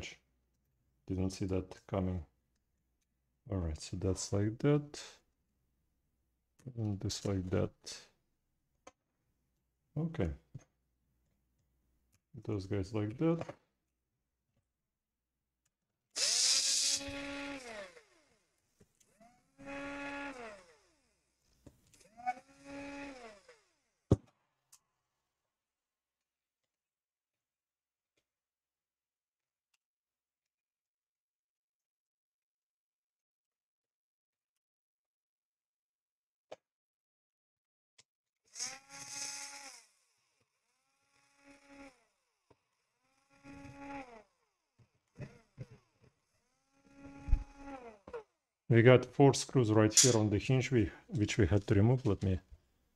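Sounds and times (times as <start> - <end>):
electric screwdriver motor whirring: 16.2 - 18.4, 19.1 - 21.2, 22.0 - 23.8, 38.5 - 40.0.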